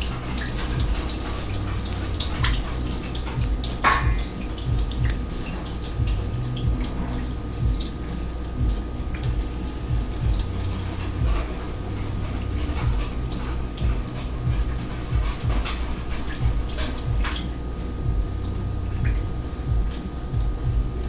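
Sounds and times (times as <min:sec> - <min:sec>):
water drips and splashes: 0:00.0 - 0:21.0
water running from sink: 0:00.0 - 0:21.0.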